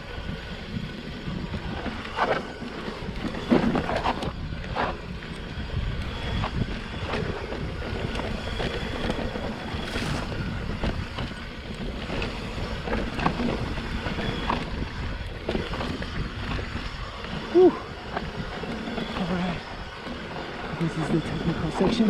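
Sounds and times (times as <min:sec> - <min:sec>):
wind buffeting microphone: 0:00.0 - 0:22.0
tyre noise on dirt: 0:09.6 - 0:10.7
bike rattling and knocking: 0:09.8 - 0:10.6.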